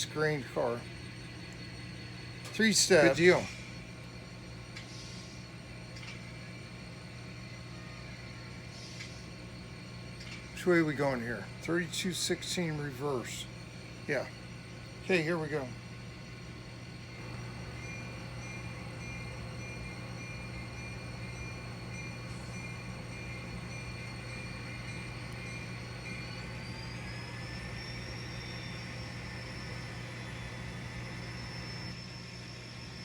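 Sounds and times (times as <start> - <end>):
model locomotive mechanical whine: 0.0 - 33.0
low hum: 9.4 - 33.0.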